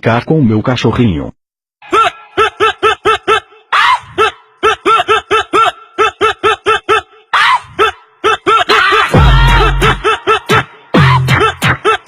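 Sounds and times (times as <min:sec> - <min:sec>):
rapid high-pitched laughter: 0:01.9 - 0:07.1, 0:08.3 - 0:12.0.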